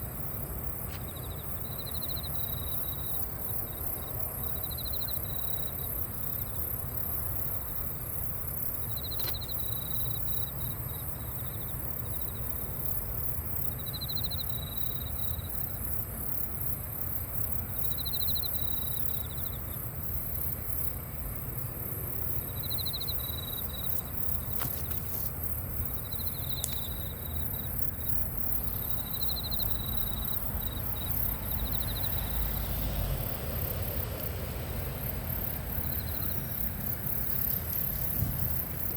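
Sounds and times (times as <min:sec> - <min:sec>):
trilled insect chirps: 0:22.2 - 0:32.8
faint clicks: 0:26.5 - 0:26.9.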